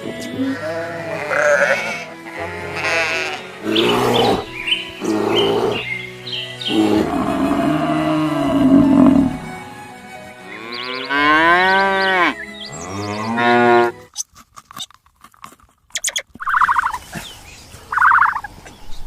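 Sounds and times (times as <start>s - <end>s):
cow mooing: 0.0s - 5.9s, 6.7s - 9.6s, 10.5s - 14.0s.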